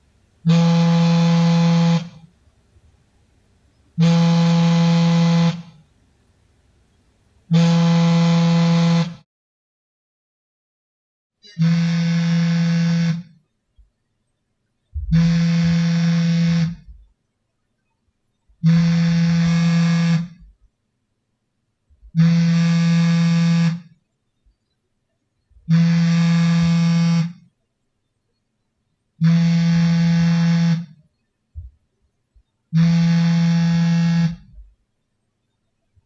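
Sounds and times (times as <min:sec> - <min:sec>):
phone vibration buzzing: 0:00.4 - 0:02.3, 0:04.0 - 0:05.8, 0:07.5 - 0:09.2, 0:11.5 - 0:13.4, 0:15.0 - 0:17.0, 0:18.6 - 0:20.5, 0:22.1 - 0:24.0, 0:25.6 - 0:27.5, 0:29.2 - 0:31.0, 0:32.7 - 0:34.8.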